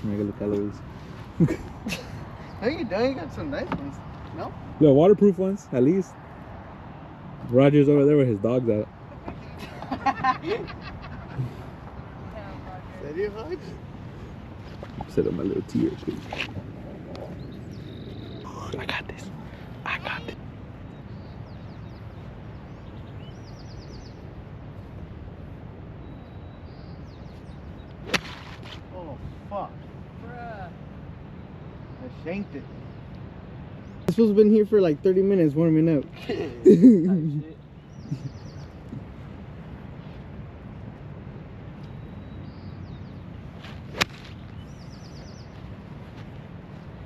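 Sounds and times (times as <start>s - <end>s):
low outdoor background noise: 0.0s - 47.0s
small bird chirping: 17.1s - 24.3s, 37.3s - 39.0s, 41.8s - 45.7s
golf club striking ball: 28.0s - 28.8s, 43.9s - 44.3s.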